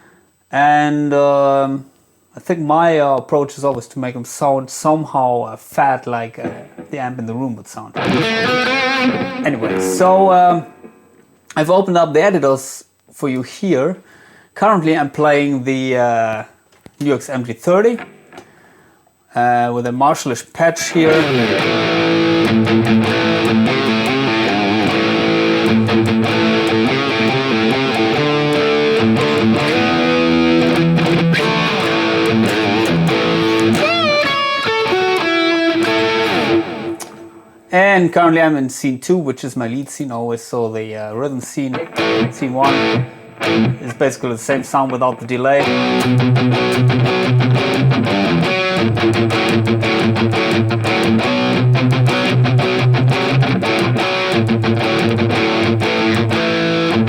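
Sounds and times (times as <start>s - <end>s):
distorted electric guitar lead: 6.4s - 7.0s, 8.0s - 11.4s, 18.0s - 18.5s, 21.0s - 37.7s, 41.7s - 57.0s.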